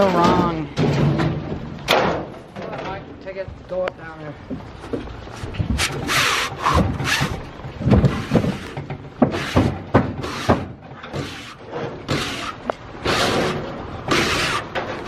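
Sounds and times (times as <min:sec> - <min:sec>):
rough scraping strokes: 0:05.7 - 0:15.0
sharp knocks: 0:06.6 - 0:11.4.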